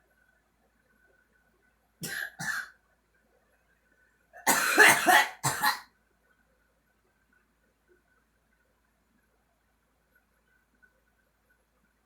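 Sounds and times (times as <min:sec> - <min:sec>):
girl coughing: 0:04.5 - 0:05.8.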